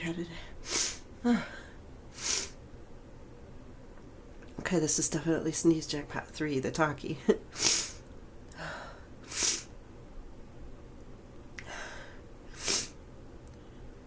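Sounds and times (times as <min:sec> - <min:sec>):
woman sneezing: 0:07.6 - 0:08.0, 0:09.3 - 0:09.7.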